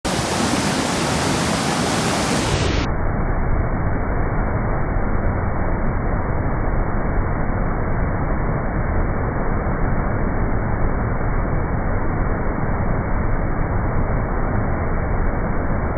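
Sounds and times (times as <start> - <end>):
fast-flowing water rushing: 0.1 - 2.8.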